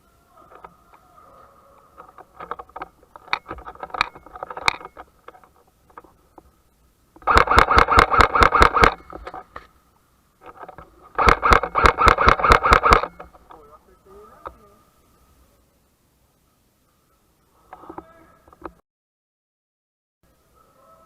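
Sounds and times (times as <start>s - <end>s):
airsoft rifle automatic bursts: 7.2s - 9.0s, 11.1s - 13.3s.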